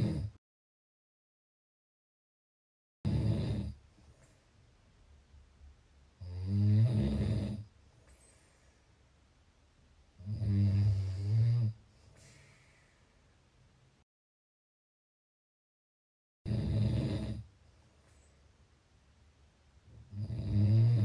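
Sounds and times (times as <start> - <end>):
person snoring: 0.0 - 0.4, 3.1 - 3.8, 6.2 - 7.7, 10.2 - 11.8, 16.5 - 17.5, 20.1 - 21.0.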